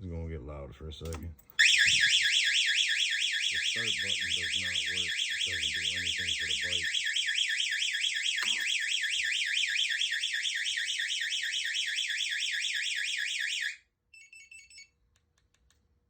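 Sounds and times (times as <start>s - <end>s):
alarm chirps: 1.6s - 13.8s
alarm siren warbling: 1.6s - 13.8s.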